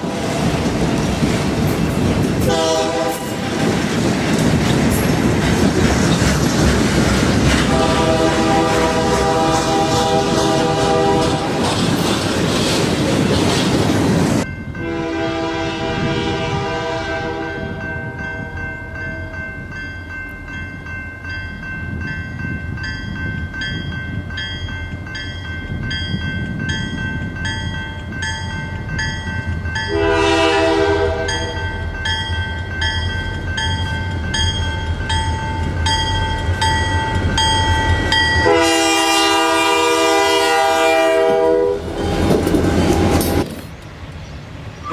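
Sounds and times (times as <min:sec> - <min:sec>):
train rumbling past: 0:00.0 - 0:44.9
locomotive air horn blasts: 0:02.4 - 0:03.7, 0:07.6 - 0:11.6, 0:14.8 - 0:17.8, 0:29.9 - 0:31.6, 0:38.4 - 0:43.3.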